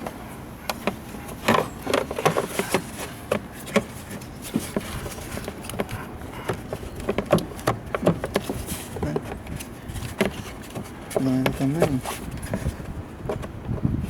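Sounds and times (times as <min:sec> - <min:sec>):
clicks and knocks of hard parts: 0:00.0 - 0:13.9.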